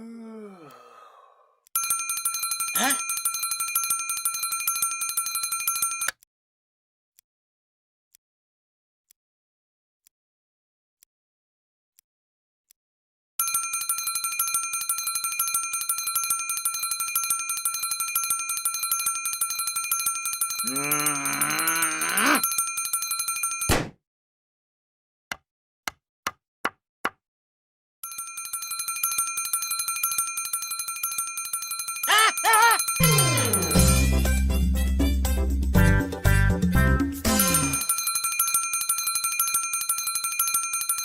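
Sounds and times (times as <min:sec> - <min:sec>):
alarm clock bell ringing: 0:01.8 - 0:06.1, 0:13.4 - 0:23.7, 0:28.0 - 0:34.3, 0:37.3 - 0:41.0.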